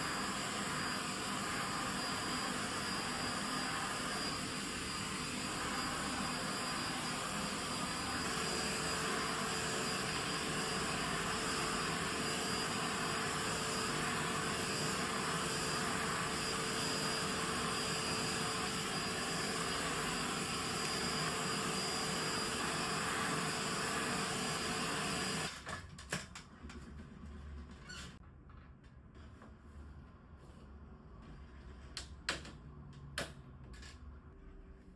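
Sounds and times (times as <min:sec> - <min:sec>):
vacuum cleaner running: 0:00.0 - 0:25.8.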